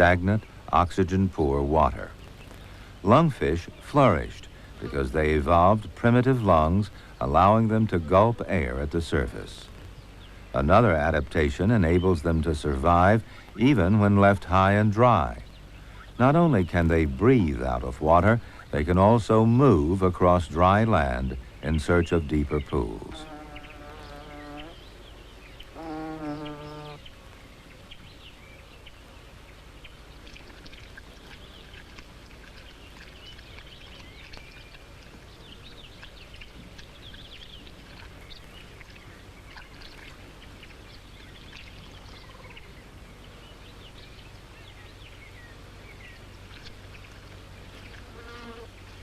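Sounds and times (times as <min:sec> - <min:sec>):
water and mud squelching: 0:29.8 - 0:42.8, 0:46.0 - 0:49.0.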